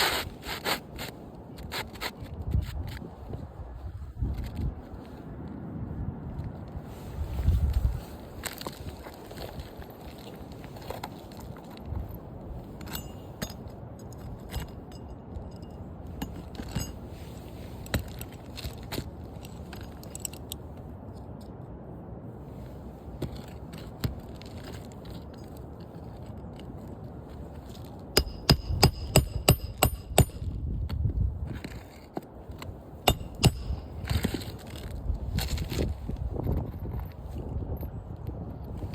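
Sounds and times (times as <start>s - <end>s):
hammer striking nails: 28.2s - 30.5s, 33.1s - 33.9s.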